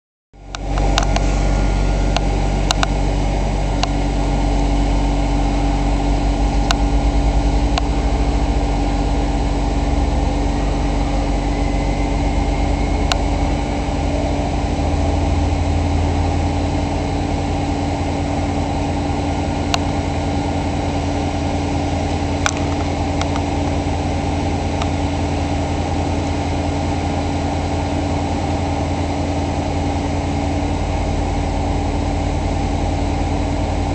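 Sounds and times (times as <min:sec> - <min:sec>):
diesel train engine idling: 0:00.4 - 0:33.9.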